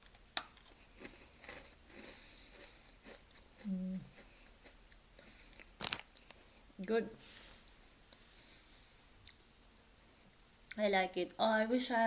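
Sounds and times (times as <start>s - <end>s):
chewing crisp biscuit: 0.0s - 6.5s
closed-mouth hum: 2.1s - 7.1s.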